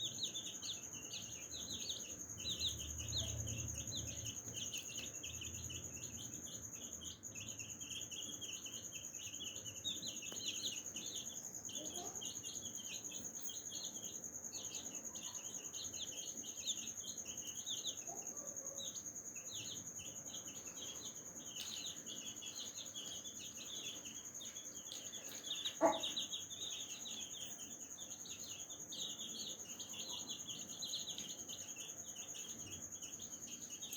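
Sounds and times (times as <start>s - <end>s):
baby chicks peeping: 0.0s - 33.9s
hen clucking: 25.7s - 26.2s.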